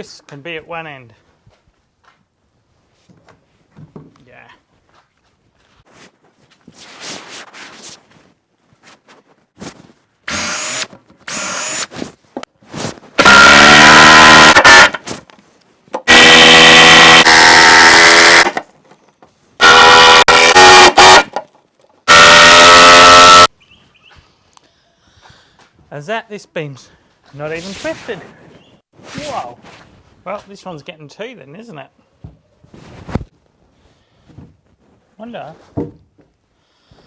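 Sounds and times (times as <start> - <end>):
impact driver hammering buzz: 10.3 - 11.9, 13.2 - 15.0, 16.0 - 18.6, 19.6 - 21.4, 22.1 - 23.5.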